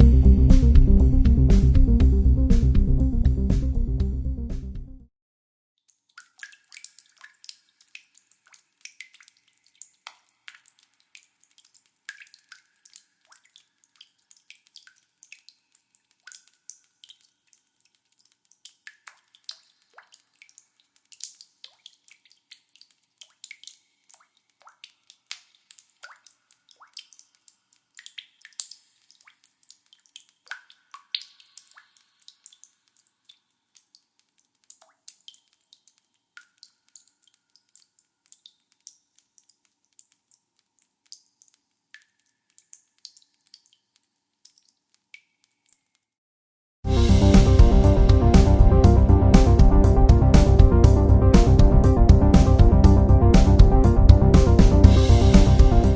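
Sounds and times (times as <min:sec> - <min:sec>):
water drops dripping in a cave: 0:05.8 - 0:46.2, 0:47.1 - 0:55.9.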